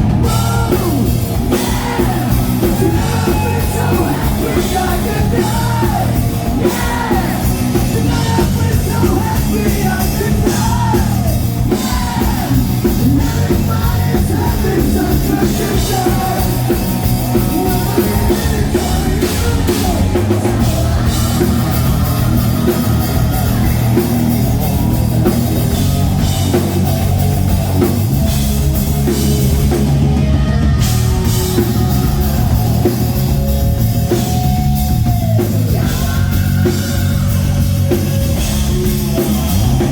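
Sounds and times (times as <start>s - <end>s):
lead singing: 0.0s - 28.0s, 29.1s - 39.9s
drum kit: 0.0s - 39.9s
live rock band: 0.0s - 39.9s.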